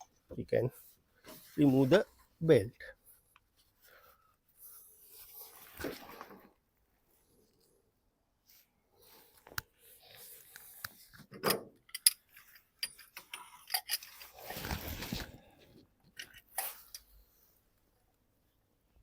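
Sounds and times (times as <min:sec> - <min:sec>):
tools clicking and knocking: 0:11.3 - 0:14.2.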